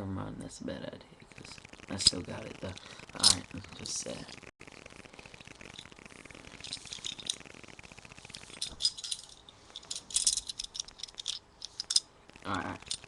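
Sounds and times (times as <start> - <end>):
metal belt buckle jingling: 8.6 - 12.0.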